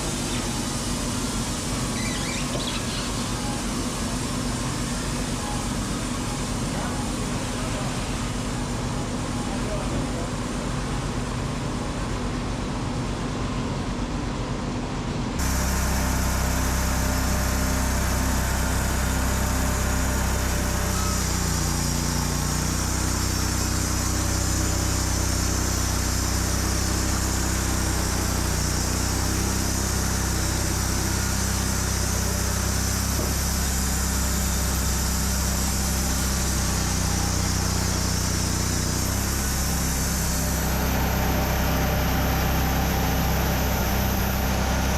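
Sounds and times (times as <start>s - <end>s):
band sawmill engine drone: 15.3s - 44.9s
high hiss: 15.4s - 44.9s.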